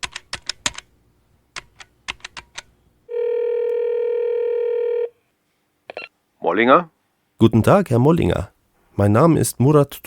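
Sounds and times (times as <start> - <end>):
telephone ringing tone: 3.1 - 5.2.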